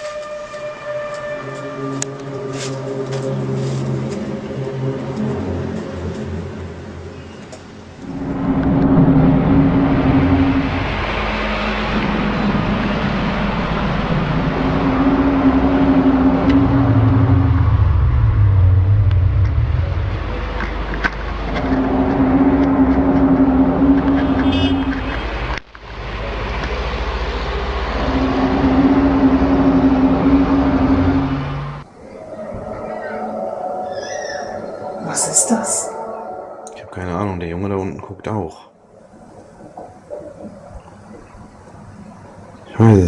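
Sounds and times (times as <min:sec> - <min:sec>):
loud low droning hum: 0:01.4 - 0:33.9
deep rumble: 0:01.4 - 0:38.2.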